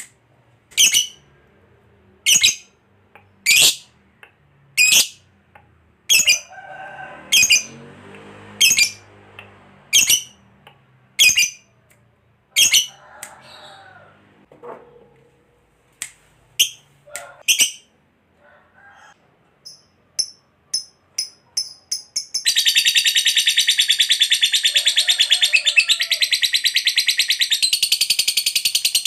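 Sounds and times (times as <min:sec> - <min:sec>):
lovebird high-pitched calls: 0:00.7 - 0:01.2, 0:02.2 - 0:02.7, 0:03.4 - 0:03.9, 0:04.8 - 0:05.2, 0:06.1 - 0:06.5, 0:07.3 - 0:07.8, 0:08.6 - 0:09.0, 0:09.9 - 0:10.4, 0:11.2 - 0:11.7, 0:12.6 - 0:13.0, 0:16.6 - 0:17.9, 0:19.6 - 0:29.0.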